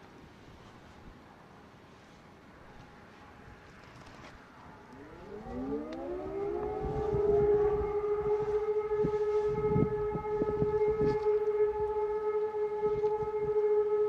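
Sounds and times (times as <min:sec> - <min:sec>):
civil defense siren: 0:02.0 - 0:14.0.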